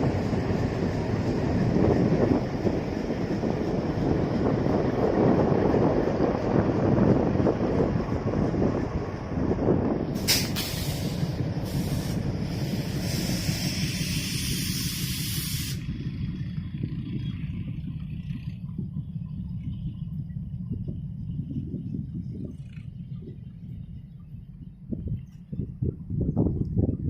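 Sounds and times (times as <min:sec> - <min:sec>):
low rumble: 0:00.0 - 0:27.0
air brakes hissing: 0:10.1 - 0:16.1.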